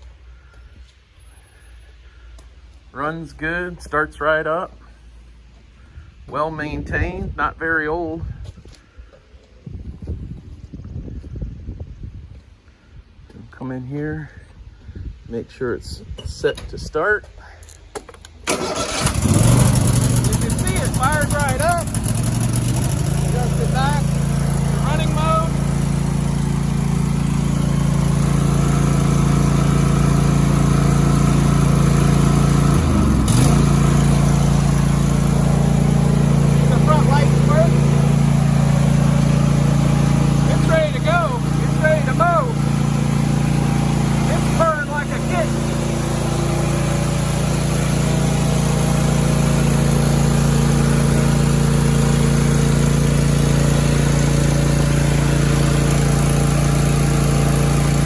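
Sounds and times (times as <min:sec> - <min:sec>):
mower engine running: 0:18.4 - 0:58.0.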